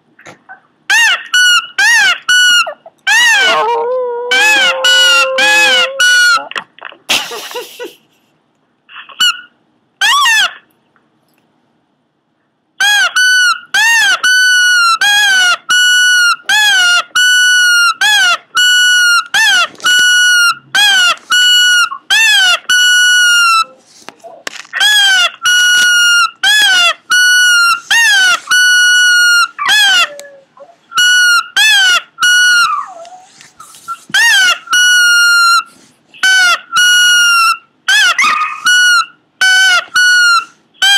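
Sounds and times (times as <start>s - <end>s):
small dog high-pitched cries: 0.5s - 6.5s, 12.9s - 23.8s, 24.8s - 35.7s, 36.3s - 40.9s.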